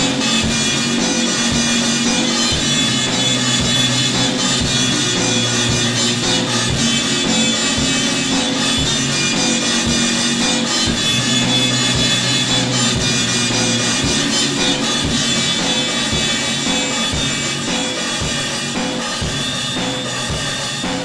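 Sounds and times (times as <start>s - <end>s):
sustained synth tones: 0.0s - 18.2s
steady drum beat: 0.0s - 21.0s.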